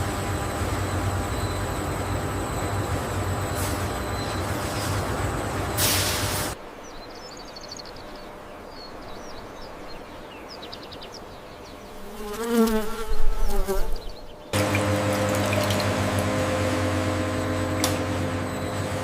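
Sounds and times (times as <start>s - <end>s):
steady machine hum: 0.0s - 6.6s, 14.6s - 19.0s.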